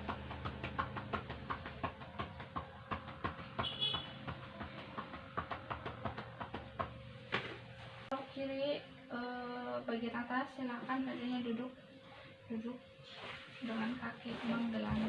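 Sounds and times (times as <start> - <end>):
cupped hands clapping on back: 0.0 - 7.5.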